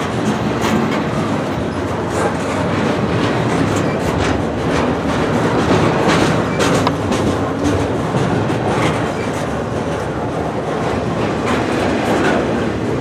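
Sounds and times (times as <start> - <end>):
freight train rolling on rails: 0.0 - 13.0
wheels clacking over rail joints: 0.0 - 13.0.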